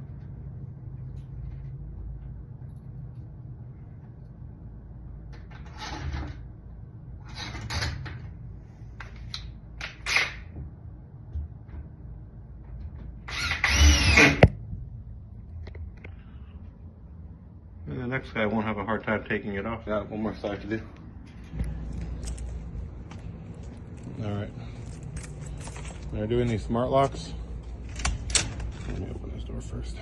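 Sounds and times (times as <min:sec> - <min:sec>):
power drill driving a screw: 0:13.3 - 0:14.5.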